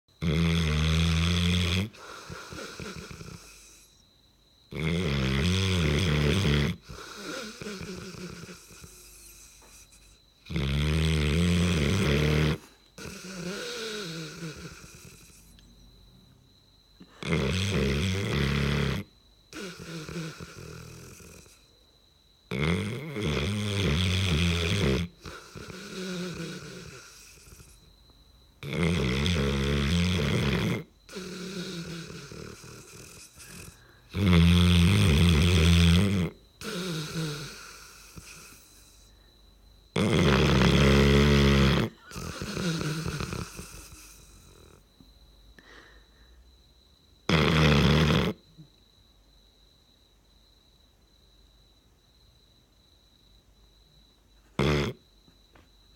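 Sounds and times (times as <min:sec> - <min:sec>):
dog snoring: 0:00.2 - 0:04.0, 0:04.7 - 0:16.3, 0:17.0 - 0:21.7, 0:22.5 - 0:28.0, 0:28.6 - 0:39.2, 0:39.9 - 0:45.0, 0:47.2 - 0:48.7, 0:54.5 - 0:55.1
dog breathing: 0:00.6 - 0:04.1, 0:04.8 - 0:10.5, 0:11.5 - 0:16.2, 0:17.0 - 0:21.7, 0:22.8 - 0:28.0, 0:28.6 - 0:39.4, 0:40.0 - 0:46.4.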